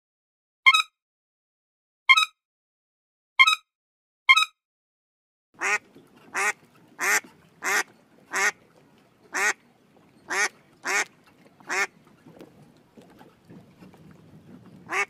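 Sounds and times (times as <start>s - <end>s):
duck quacking: 5.6s - 8.6s, 9.3s - 9.6s, 10.3s - 11.9s.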